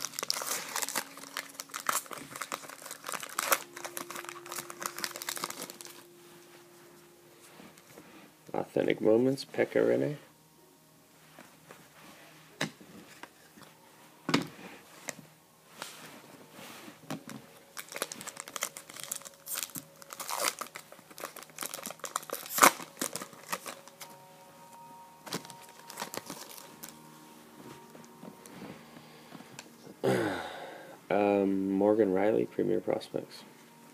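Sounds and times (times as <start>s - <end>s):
card pack wrapper tearing: 0.0s - 6.0s, 17.7s - 24.1s, 25.3s - 27.0s.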